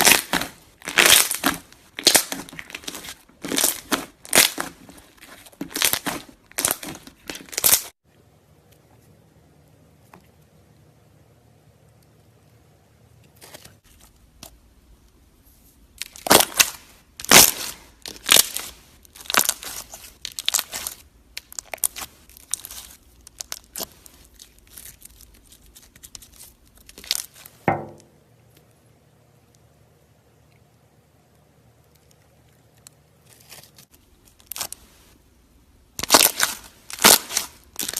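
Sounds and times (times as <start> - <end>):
slime crackling and popping: 0.0 - 8.0, 16.0 - 28.1, 31.8 - 35.1, 35.9 - 37.9
slime squelch: 0.0 - 10.9, 11.6 - 28.8, 29.4 - 37.9.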